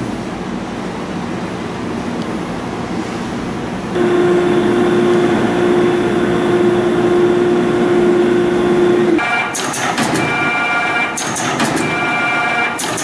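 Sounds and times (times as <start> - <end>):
machine humming: 0.5 - 13.0
machine whine: 3.9 - 13.0.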